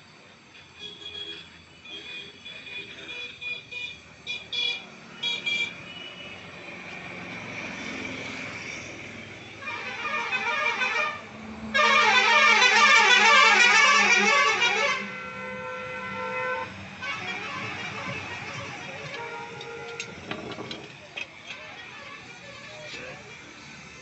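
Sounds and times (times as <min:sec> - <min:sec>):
warbling horn: 0:09.6 - 0:20.3.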